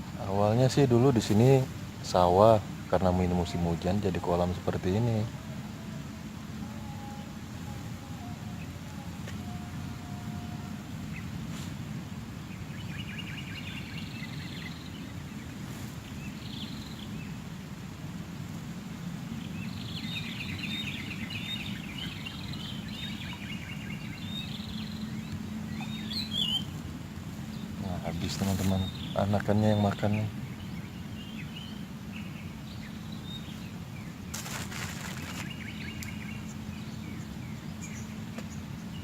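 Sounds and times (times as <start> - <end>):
low outdoor rumble: 0.0 - 39.0
small birds twittering: 0.0 - 39.0.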